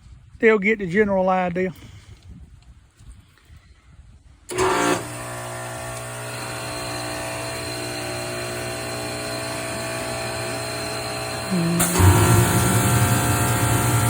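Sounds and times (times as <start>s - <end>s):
pressure washer motor humming: 4.5s - 14.0s.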